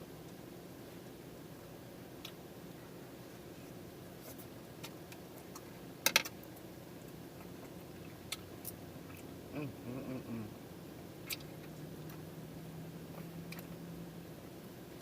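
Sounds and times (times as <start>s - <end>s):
brief voiced hum: 9.5s - 10.6s
chewing and lip-smacking: 11.2s - 12.2s
sharp mouth clicks: 11.2s - 12.2s.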